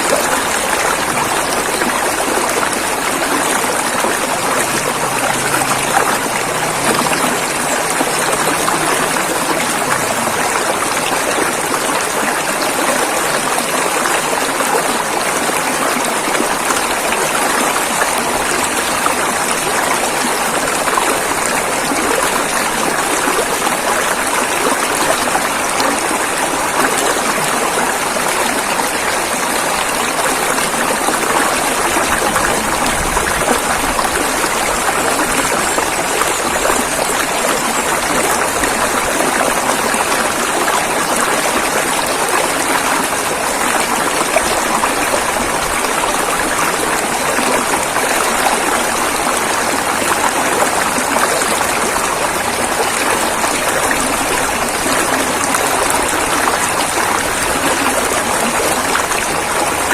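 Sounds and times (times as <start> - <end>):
river water rushing over rocks: 0.0 - 59.9.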